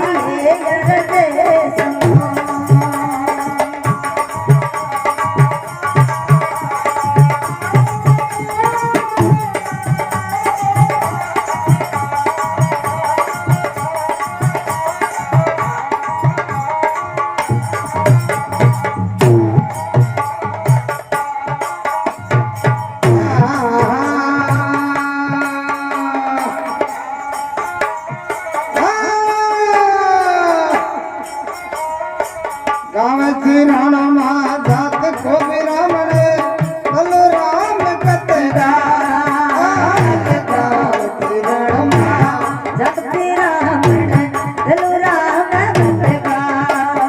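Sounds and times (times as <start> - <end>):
hand drum beat: 0.8 - 25.4, 39.6 - 44.8.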